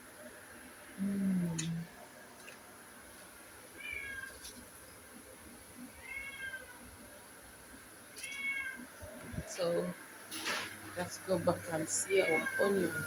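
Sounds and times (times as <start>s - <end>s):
cat meowing: 3.8s - 4.4s, 6.0s - 6.8s, 8.2s - 8.9s.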